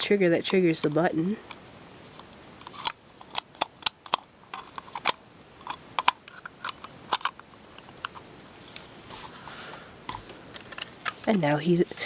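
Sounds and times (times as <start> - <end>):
plastic toy parts clicking: 2.6 - 8.2.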